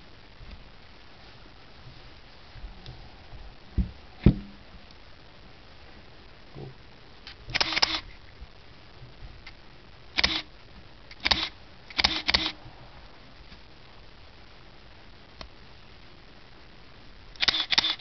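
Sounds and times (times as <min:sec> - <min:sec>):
camera shutter and film advance: 0:07.5 - 0:08.0, 0:10.2 - 0:10.5, 0:11.1 - 0:12.6, 0:17.4 - 0:18.0.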